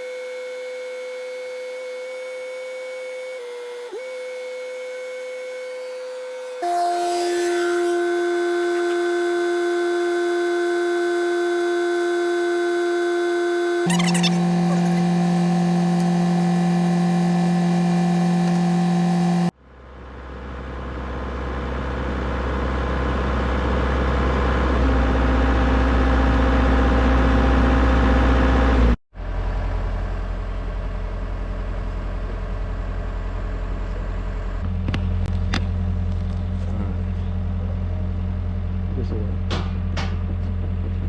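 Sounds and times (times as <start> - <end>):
diesel engine running: 7.8 - 41.0.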